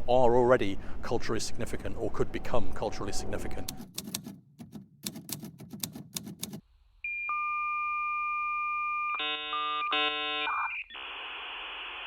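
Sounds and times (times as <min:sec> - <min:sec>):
rapid clicking: 0:03.7 - 0:06.6.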